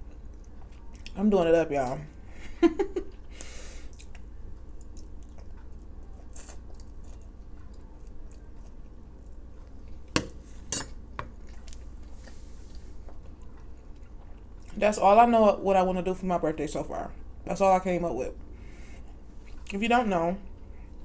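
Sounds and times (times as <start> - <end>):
faint chewing: 0.0 - 1.2, 3.1 - 10.1, 11.3 - 14.8.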